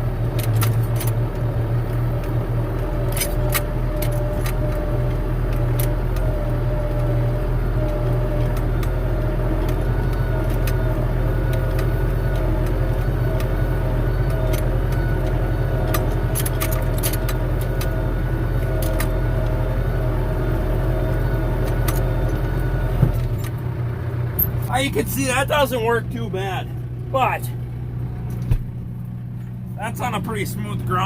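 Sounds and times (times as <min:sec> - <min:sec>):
steady whine: 0:00.0 - 0:31.0
tractor engine running: 0:00.0 - 0:31.0
clicks and rattles: 0:14.2 - 0:17.9.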